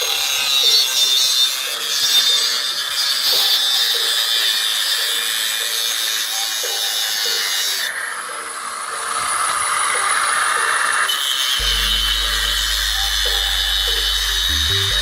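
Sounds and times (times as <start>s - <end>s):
angle grinder cutting: 0.0s - 15.0s.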